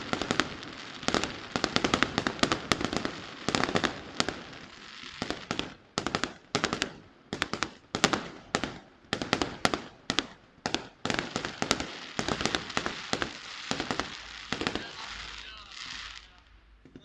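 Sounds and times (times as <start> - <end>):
fireworks bangs: 0.0 - 17.0.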